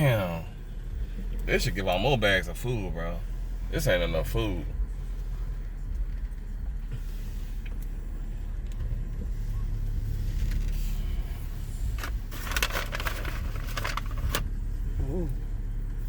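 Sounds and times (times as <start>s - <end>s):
car rumble from inside cabin: 0.0s - 16.0s.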